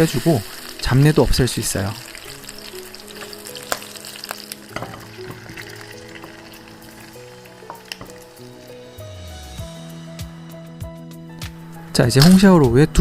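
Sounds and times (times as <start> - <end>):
meat sizzling in hot oil: 0.0 - 9.6.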